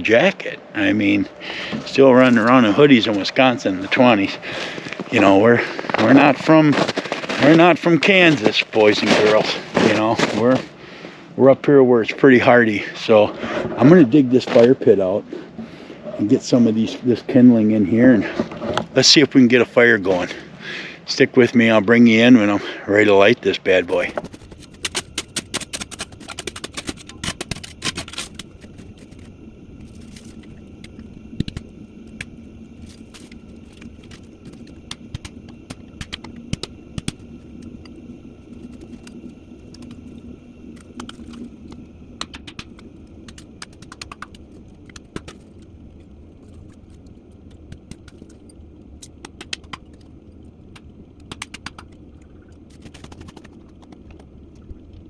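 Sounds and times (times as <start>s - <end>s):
steady low hum: 0.0s - 55.0s
wood clicking and knocking: 40.8s - 45.6s, 49.0s - 50.1s, 50.7s - 54.4s.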